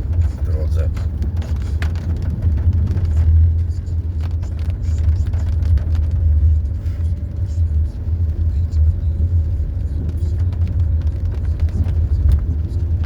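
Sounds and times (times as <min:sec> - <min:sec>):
car engine and tyres rumbling: 0:00.0 - 0:13.0.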